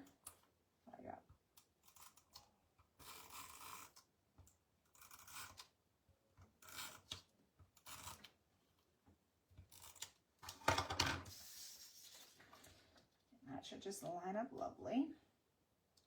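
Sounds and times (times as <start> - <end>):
paper scraping and rustling: 10.8 - 13.1.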